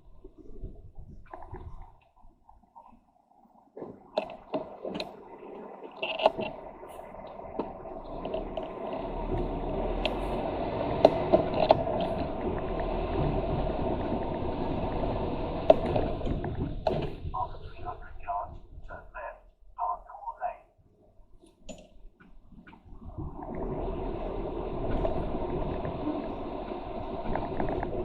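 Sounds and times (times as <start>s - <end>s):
truck engine and road rumble: 6.4s - 20.4s.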